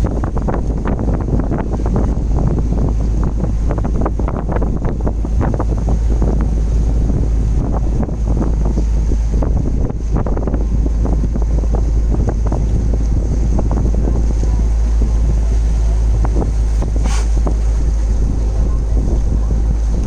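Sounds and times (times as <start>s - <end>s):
wind buffeting microphone: 0.0s - 20.0s
brief hiss: 16.6s - 17.4s.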